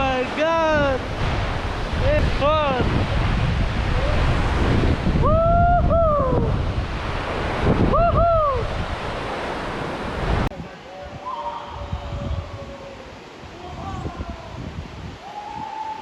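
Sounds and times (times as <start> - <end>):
wind rushing over microphone: 0.0 - 16.0
person whooping: 5.2 - 6.5, 7.9 - 8.7, 15.2 - 16.0.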